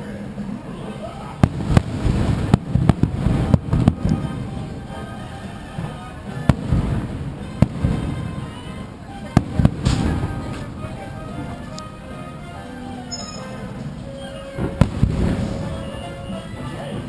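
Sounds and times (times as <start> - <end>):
music playing: 0.8 - 17.0
low booming rumble: 1.4 - 5.1, 5.8 - 11.7, 14.6 - 16.5
fireworks bangs: 1.4 - 11.7, 14.5 - 17.0.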